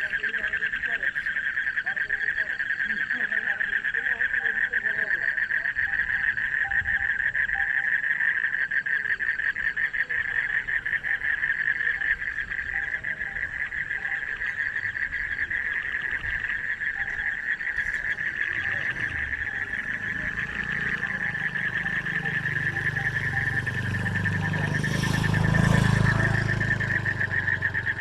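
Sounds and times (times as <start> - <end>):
frogs calling: 0.0 - 28.0.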